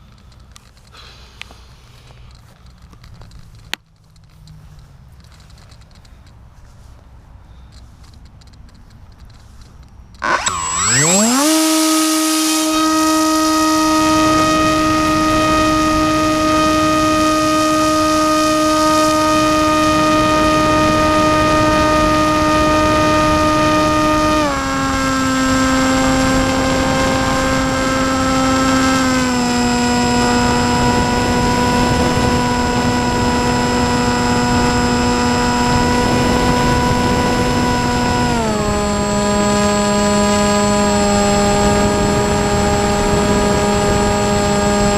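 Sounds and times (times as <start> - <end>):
electric motor propeller whine: 10.2 - 44.9.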